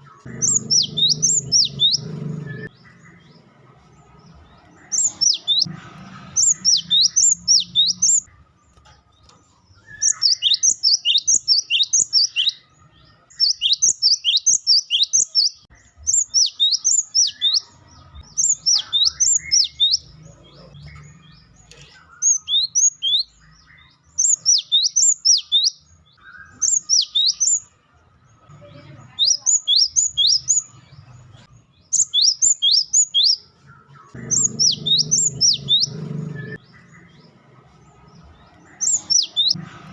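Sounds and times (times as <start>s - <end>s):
bird singing high quick notes: 0.2s - 3.2s, 4.9s - 5.7s, 6.4s - 8.3s, 9.8s - 12.6s, 13.3s - 27.7s, 34.1s - 37.2s.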